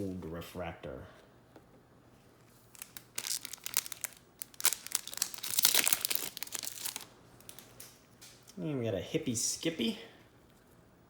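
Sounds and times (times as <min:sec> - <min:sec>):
foil wrapper crinkling and tearing: 0:02.6 - 0:07.7.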